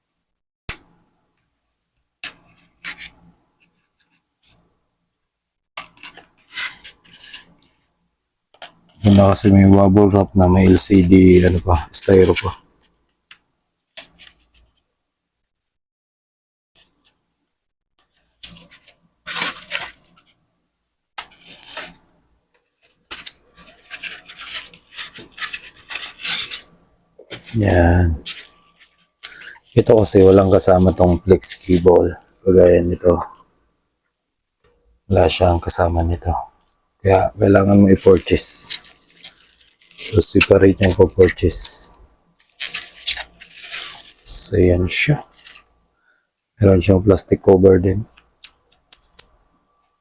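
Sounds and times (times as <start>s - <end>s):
bubble wrap crinkling: 5.8s - 7.8s, 8.6s - 12.9s, 18.1s - 20.4s, 21.2s - 33.4s, 35.1s - 45.8s
plastic packaging rustling: 5.8s - 7.9s, 8.6s - 13.0s, 18.1s - 20.4s, 21.2s - 33.4s, 35.1s - 45.8s.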